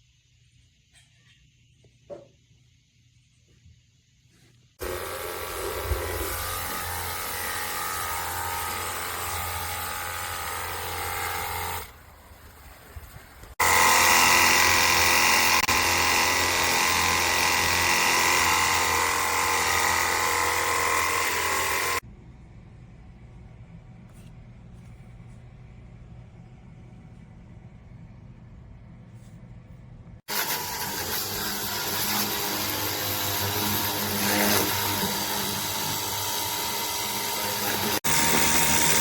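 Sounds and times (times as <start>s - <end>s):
pressure washer spraying water: 4.8s - 7.5s.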